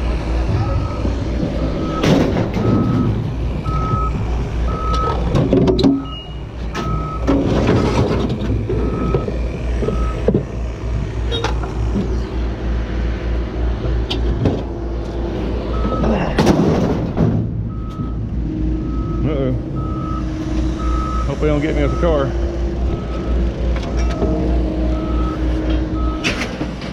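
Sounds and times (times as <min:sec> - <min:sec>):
diesel engine running: 0:00.0 - 0:26.9
reversing alarm beeping: 0:00.6 - 0:08.1, 0:08.7 - 0:10.3, 0:15.7 - 0:16.3, 0:17.7 - 0:26.4.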